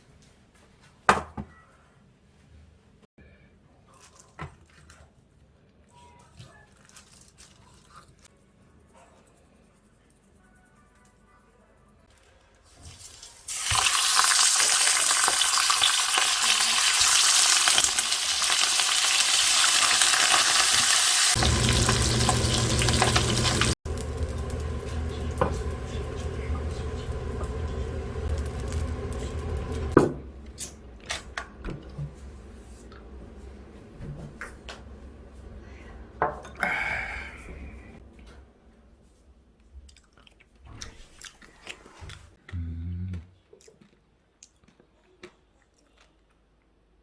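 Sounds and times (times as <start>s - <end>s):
food sizzling in a pan: 12.8s - 30.0s
low steady hum: 21.4s - 40.0s.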